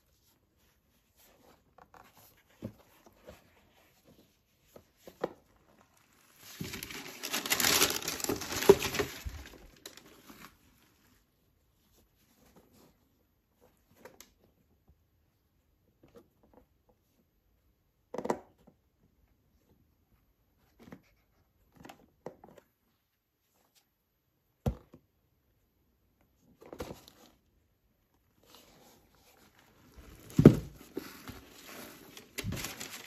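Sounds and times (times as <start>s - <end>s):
packaging rustling: 5.6s - 10.8s, 29.6s - 33.0s.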